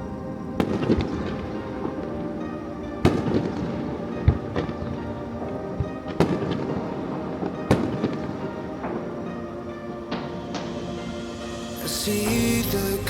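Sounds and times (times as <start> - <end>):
fireworks bangs: 3.0 - 13.0
pop music: 10.0 - 13.0.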